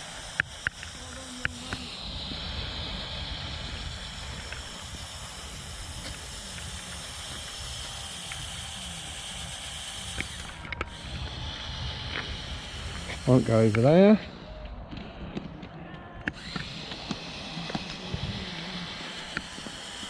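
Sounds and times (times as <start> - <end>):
faint clicks: 0.0 - 1.9
toy motors and gears whirring: 0.0 - 15.2, 16.2 - 20.0.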